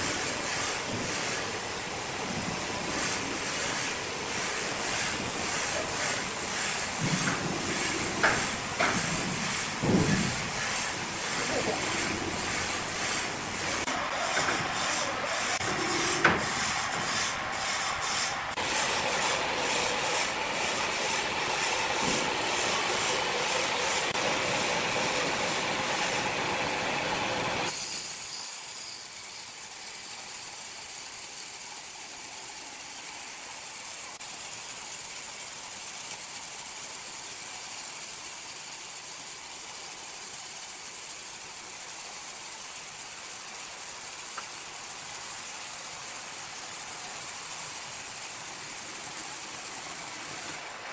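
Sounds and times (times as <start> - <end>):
sawmill machinery clatter: 0.0 - 50.9
high-pitched hiss: 27.7 - 50.9.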